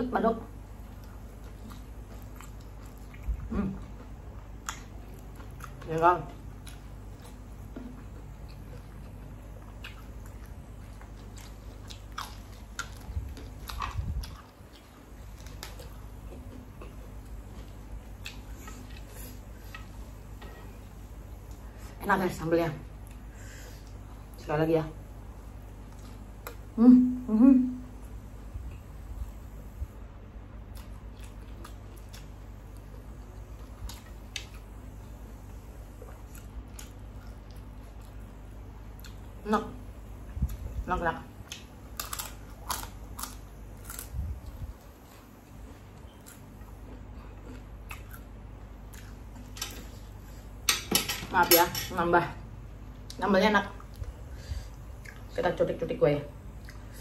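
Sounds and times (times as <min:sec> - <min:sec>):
steady low hum: 0:00.0 - 0:57.0
person chewing food: 0:00.8 - 0:20.8, 0:30.6 - 0:39.4, 0:41.4 - 0:50.6, 0:56.5 - 0:57.0.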